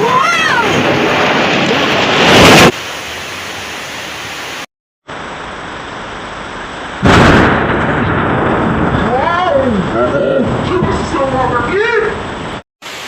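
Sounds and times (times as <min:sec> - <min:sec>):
rain-like hiss: 0:01.6 - 0:10.4, 0:11.0 - 0:13.0
loud noisy crash: 0:07.0 - 0:09.0.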